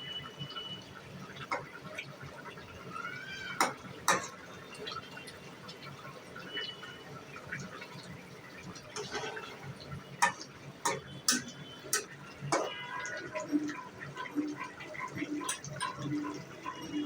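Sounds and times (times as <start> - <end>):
utensils clinking on cookware: 3.5 - 4.4, 8.9 - 13.0, 15.2 - 17.0.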